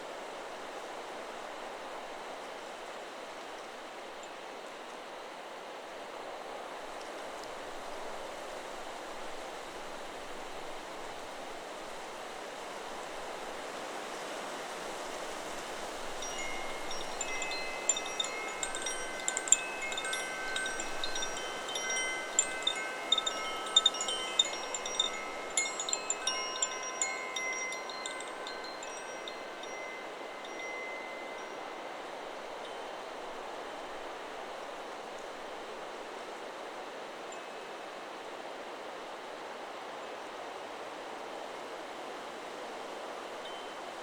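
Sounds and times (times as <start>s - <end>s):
wind in the trees: 0.0s - 44.0s
wind chime ringing: 16.1s - 33.0s.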